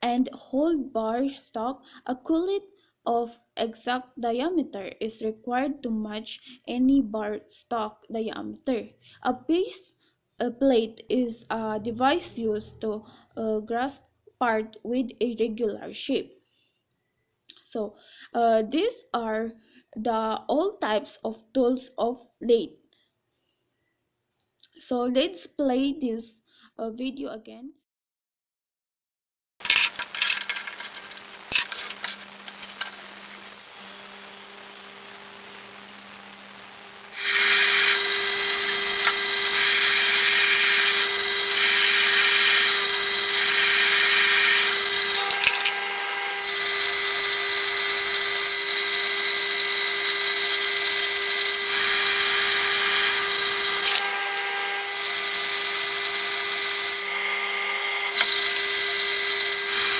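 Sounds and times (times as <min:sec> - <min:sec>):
clicks: 0:29.6 - 0:59.9
lathe motor hum: 0:29.6 - 0:59.9
lathe machining whine with hiss: 0:30.0 - 0:59.9.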